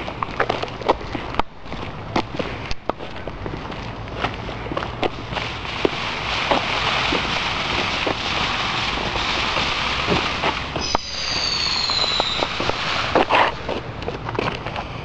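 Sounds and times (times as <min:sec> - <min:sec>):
fireworks crackling and popping: 0:04.8 - 0:14.2
firework whistle: 0:10.6 - 0:13.4.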